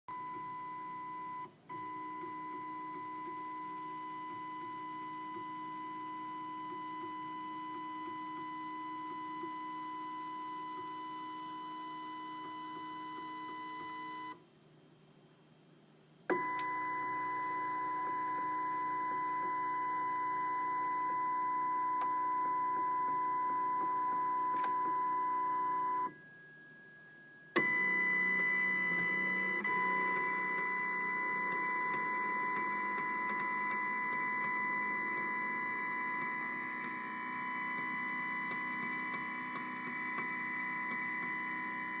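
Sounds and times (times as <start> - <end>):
printer clicking: 27.6 - 42.0.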